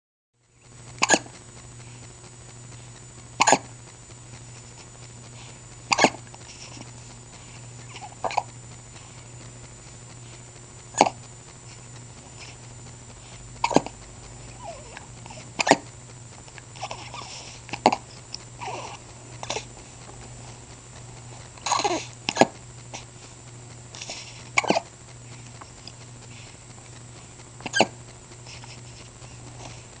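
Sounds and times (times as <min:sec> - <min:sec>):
steady low hum: 0:00.4 - 0:30.0
person hiccuping: 0:01.0 - 0:01.3, 0:03.4 - 0:03.7, 0:05.9 - 0:06.2, 0:08.0 - 0:08.6, 0:11.0 - 0:11.2, 0:13.6 - 0:13.9, 0:15.6 - 0:15.9, 0:17.8 - 0:19.0, 0:21.6 - 0:22.6, 0:24.6 - 0:24.9, 0:27.7 - 0:28.0.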